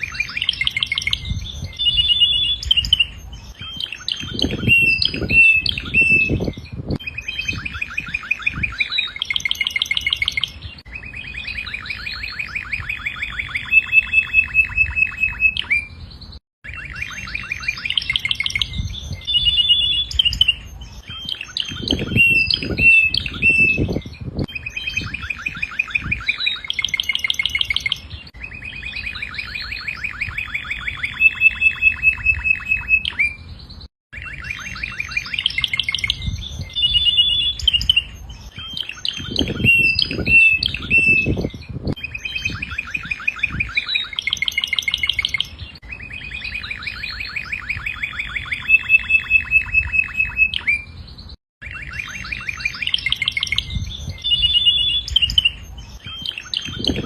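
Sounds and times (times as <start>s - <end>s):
canary singing trills: 0.0s - 57.0s.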